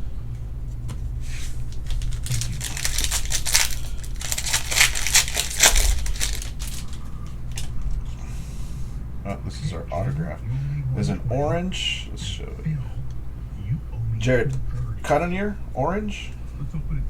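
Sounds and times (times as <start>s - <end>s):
foil wrapper crinkling and tearing: 1.6s - 8.0s.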